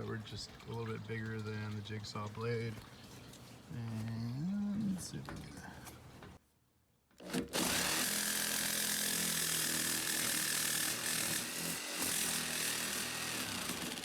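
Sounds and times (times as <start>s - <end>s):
jigsaw cutting sheet metal: 7.2s - 14.0s.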